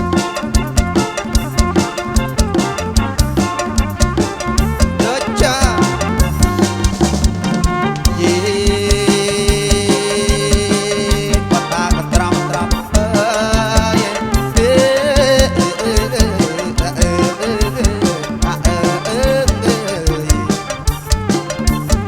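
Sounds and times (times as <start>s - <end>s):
amplified band playing: 0.0s - 22.0s
bass: 0.0s - 22.0s
driving drum beat: 0.0s - 22.0s
wavering lead melody: 0.0s - 22.0s.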